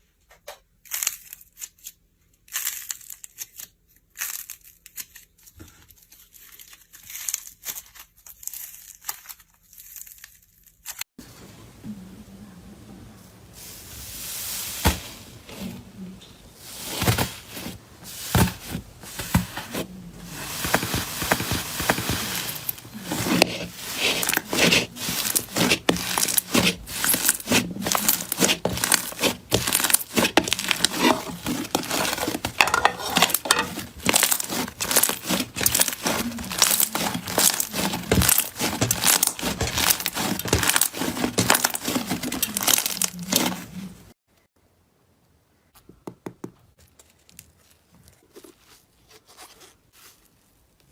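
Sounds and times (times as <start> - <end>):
slime crackling and popping: 20.6 - 43.6.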